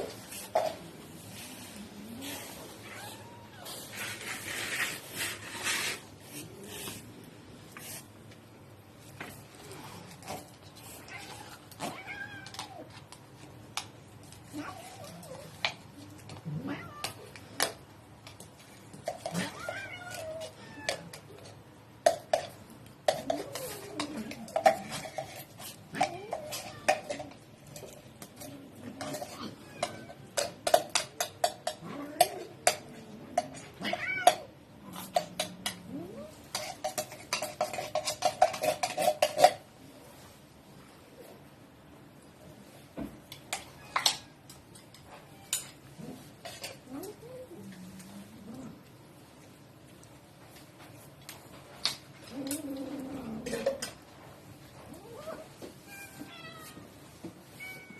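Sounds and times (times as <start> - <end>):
cats meowing and yowling: 1.9 - 4.2, 10.9 - 13.1, 14.5 - 17.7, 19.1 - 21.5, 23.1 - 25.2, 28.7 - 30.7, 31.7 - 36.5, 46.7 - 48.8, 54.8 - 57.9
dishes and cutlery clinking: 36.4 - 39.7.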